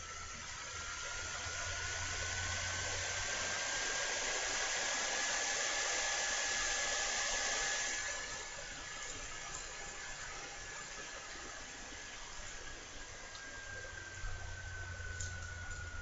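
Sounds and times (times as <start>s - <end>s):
faint rising whine: 0.0s - 16.0s.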